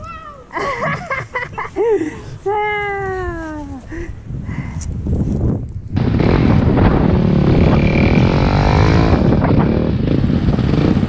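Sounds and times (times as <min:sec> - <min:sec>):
dirt bike engine revving: 0:06.0 - 0:11.0.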